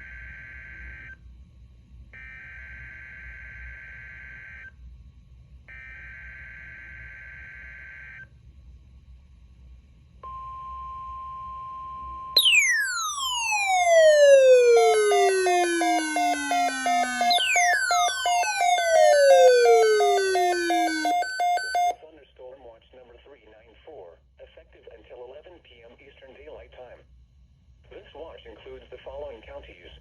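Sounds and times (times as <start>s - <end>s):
falling electronic sweep: 12.4s - 21.9s
harsh buzzing data bursts: 12.4s - 21.9s
electronic music: 12.4s - 22.0s
steady alert tone: 12.4s - 22.0s.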